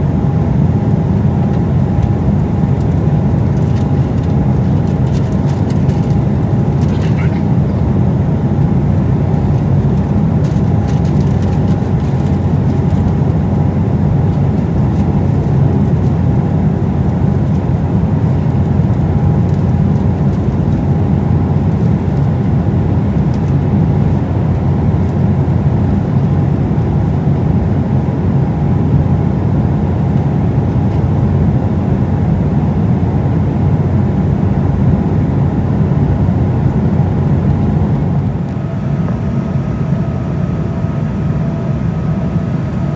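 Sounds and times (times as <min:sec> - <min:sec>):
jet cabin rumble: 0:00.0 - 0:42.9
faint steady whine: 0:33.8 - 0:42.9.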